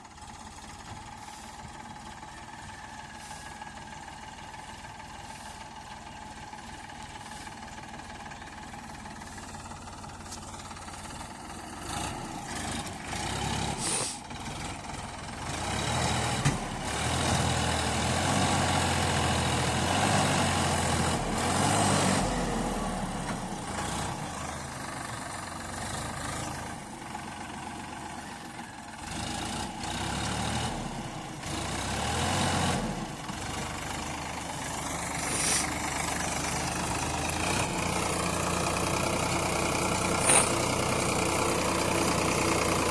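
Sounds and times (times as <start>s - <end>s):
diesel engines working: 0.0s - 42.9s
sharp metal clanks: 40.2s - 40.6s.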